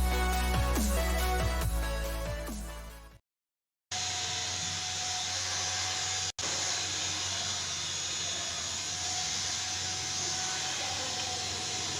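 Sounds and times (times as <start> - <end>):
small motor fan running: 4.0 - 11.9.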